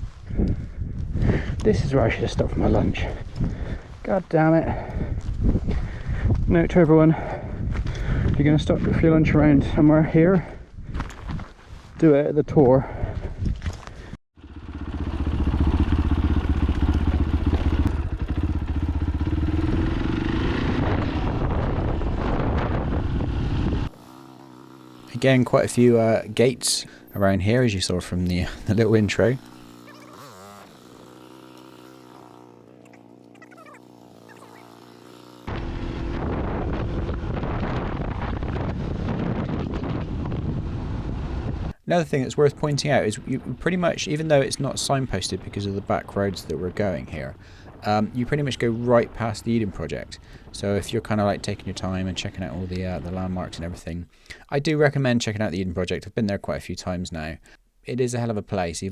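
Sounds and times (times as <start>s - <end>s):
wind buffeting microphone: 0.0s - 12.0s, 12.8s - 13.9s, 15.3s - 23.9s, 35.5s - 41.8s
motorcycle engine running: 14.4s - 53.8s.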